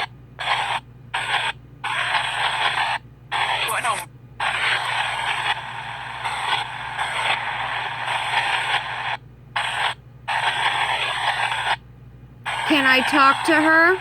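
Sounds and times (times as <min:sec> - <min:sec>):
radio static hissing: 0:00.0 - 0:11.8, 0:12.5 - 0:14.0
low steady hum: 0:00.0 - 0:14.0.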